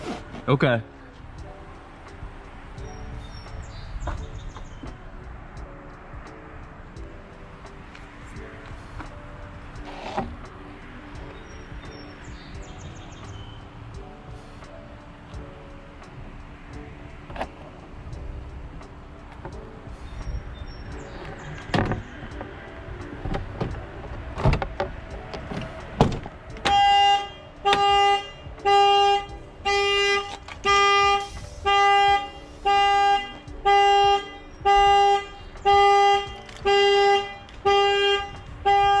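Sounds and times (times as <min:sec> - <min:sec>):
sharp clicks and knocks: 0:21.2 - 0:26.8
car alarm horn honking: 0:26.6 - 0:39.0.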